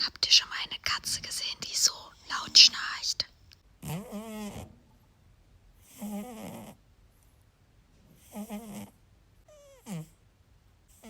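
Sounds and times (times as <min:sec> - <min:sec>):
cat snoring: 0:03.8 - 0:04.7, 0:05.8 - 0:06.8, 0:08.2 - 0:10.2.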